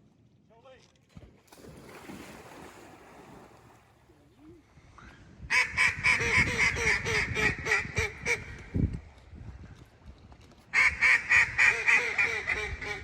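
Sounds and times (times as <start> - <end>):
wind on microphone: 4.4 - 13.0
duck call loud quacks: 10.8 - 13.0.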